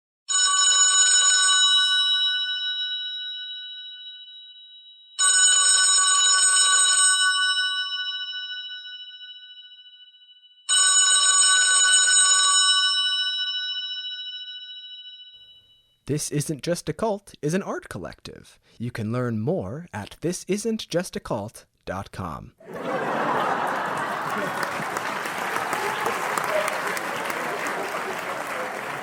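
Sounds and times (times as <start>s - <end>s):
telephone bell ringing: 0.3s - 16.0s.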